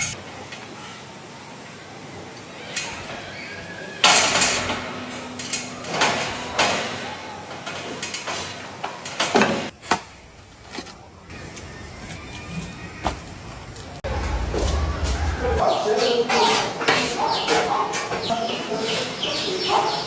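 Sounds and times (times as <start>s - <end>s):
metal scaffolding clanking: 4.0s - 13.3s, 13.9s - 20.0s.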